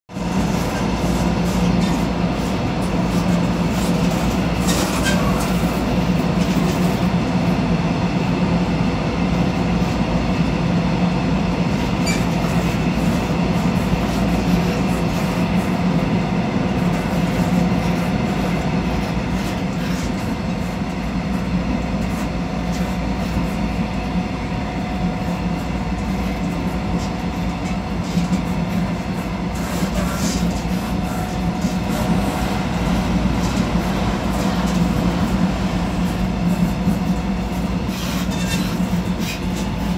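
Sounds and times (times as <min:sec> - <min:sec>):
train wheels rumbling: 0:11.5 - 0:39.9.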